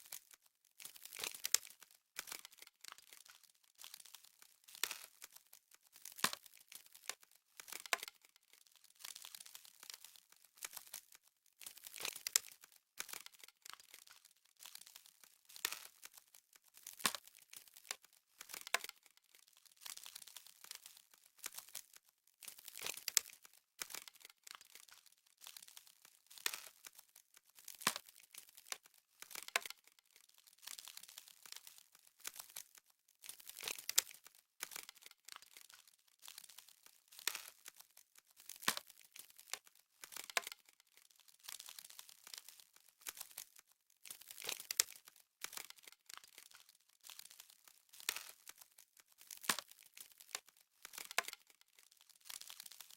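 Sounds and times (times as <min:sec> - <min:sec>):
frost crackling and crinkling: 0:00.0 - 0:52.9.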